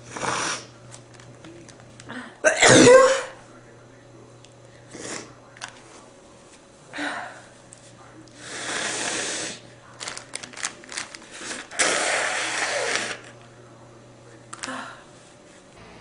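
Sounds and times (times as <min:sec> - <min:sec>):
person blowing nose: 0:00.0 - 0:00.7, 0:08.4 - 0:09.6, 0:11.3 - 0:13.2.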